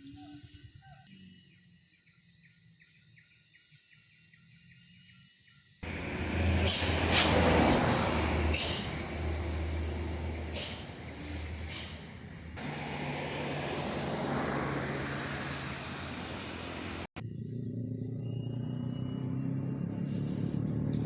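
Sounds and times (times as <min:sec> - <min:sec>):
passing motor vehicle: 0:05.8 - 0:21.0
high insect-like tone: 0:17.2 - 0:21.0.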